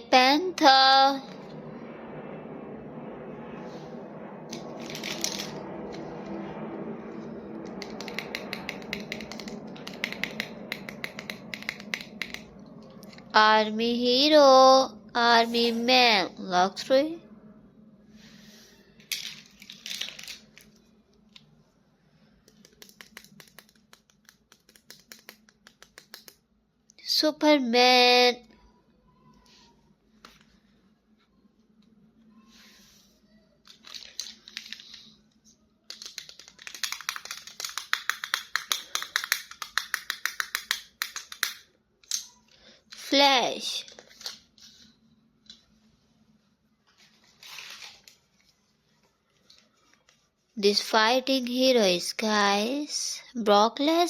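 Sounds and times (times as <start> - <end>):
light clicks of toys: 35.9 - 43.1.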